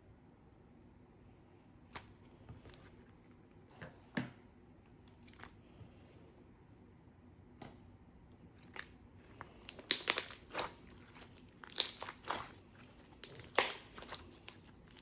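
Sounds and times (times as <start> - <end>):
slime squished by hand: 8.6 - 15.0.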